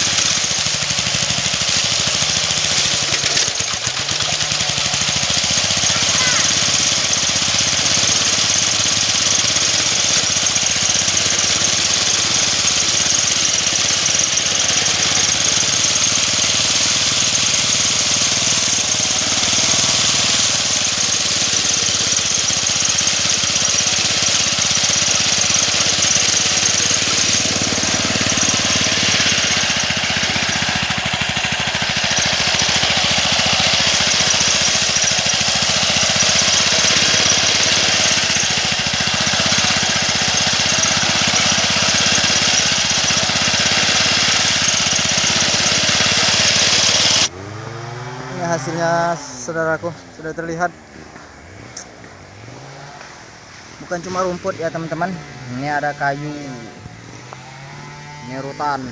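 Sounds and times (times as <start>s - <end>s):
engine grass cutter cutting brush: 0.0s - 58.9s.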